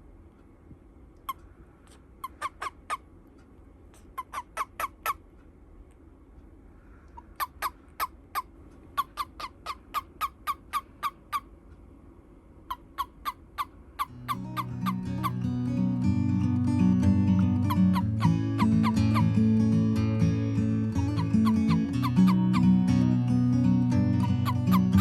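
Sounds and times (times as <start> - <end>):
toad chirping: 2.2 - 3.0, 4.0 - 5.2, 7.2 - 11.5, 12.7 - 25.0
music: 14.1 - 25.0.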